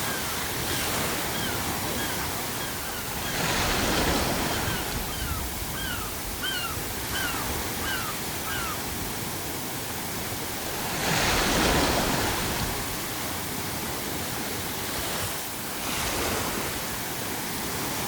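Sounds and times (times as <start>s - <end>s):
gulls calling: 0.0s - 8.9s
ocean waves washing: 0.0s - 18.0s.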